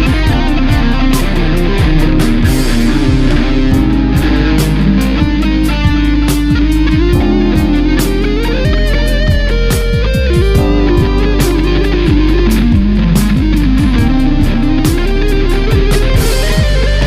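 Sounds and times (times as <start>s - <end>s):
band backing with drums and bass: 0.0s - 17.0s
electric guitar lead line: 0.0s - 17.0s.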